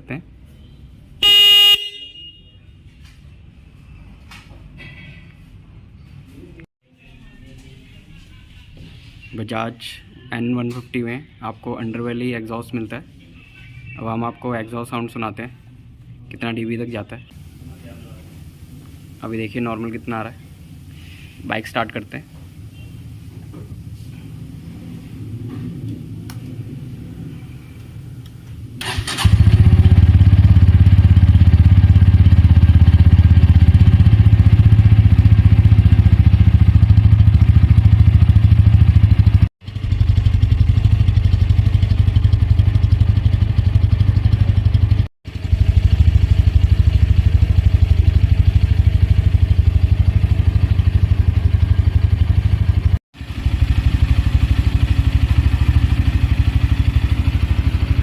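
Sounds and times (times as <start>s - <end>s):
motorcycle engine idling: 28.8s - 58.0s.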